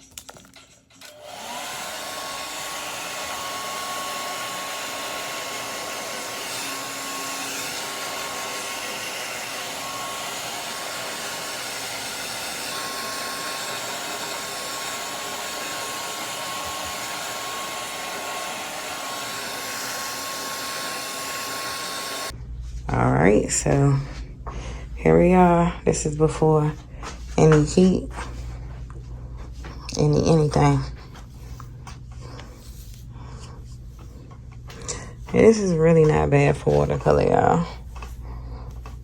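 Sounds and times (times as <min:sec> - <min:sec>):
hair dryer blowing: 0:01.0 - 0:22.4, 0:33.8 - 0:39.0.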